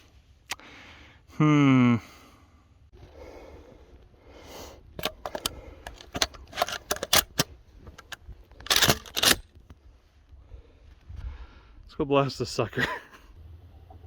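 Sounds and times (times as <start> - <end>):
sharp clicks and knocks: 5.0 - 9.6.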